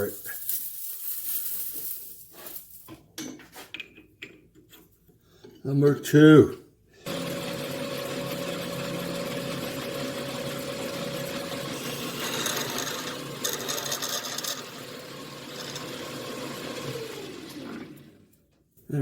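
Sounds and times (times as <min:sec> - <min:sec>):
drill bit cutting metal: 0:07.1 - 0:18.0
lathe motor hum and whine: 0:07.1 - 0:18.2
lathe motor winding down: 0:07.1 - 0:18.3.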